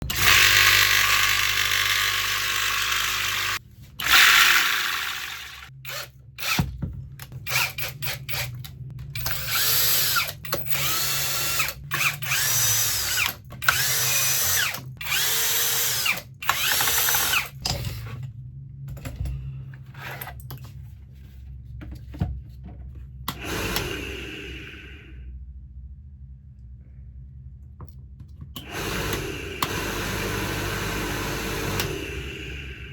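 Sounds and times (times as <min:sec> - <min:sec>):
power drill whining: 0:00.0 - 0:06.6, 0:09.2 - 0:17.6, 0:23.3 - 0:25.2, 0:28.6 - 0:32.9.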